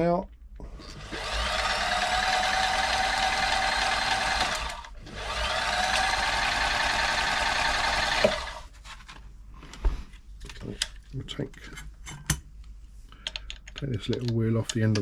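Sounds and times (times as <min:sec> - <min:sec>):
sewing machine motor whine: 0:00.9 - 0:08.7.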